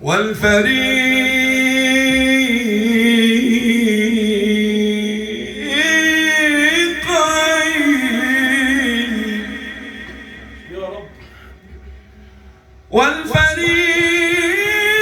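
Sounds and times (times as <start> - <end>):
man singing: 0.0 - 11.0, 12.9 - 15.0
singer breathing: 11.2 - 12.9.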